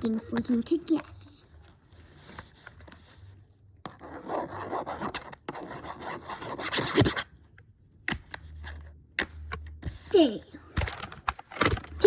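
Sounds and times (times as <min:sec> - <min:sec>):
pen scratching on paper: 0:03.8 - 0:07.2.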